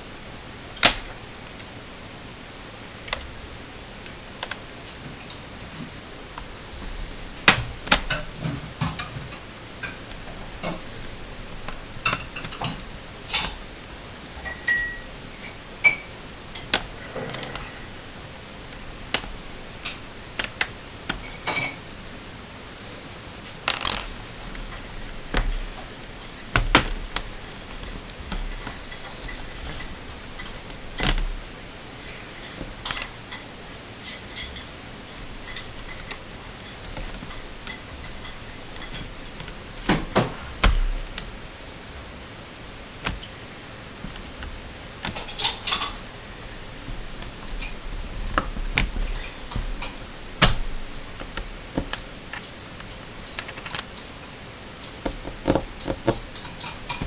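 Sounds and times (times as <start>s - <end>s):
small parts clicking and tapping: 23.6s - 25.6s, 32.8s - 33.5s.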